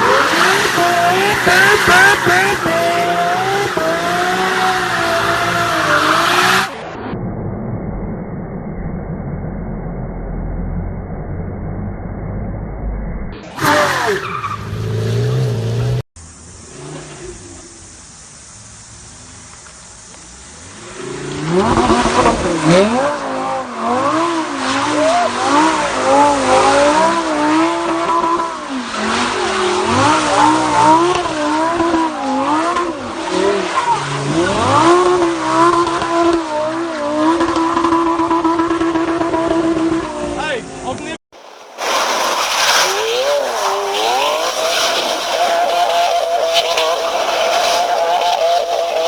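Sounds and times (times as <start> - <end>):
car engine revving hard: 0.0 - 6.8, 20.8 - 40.4, 41.4 - 49.0.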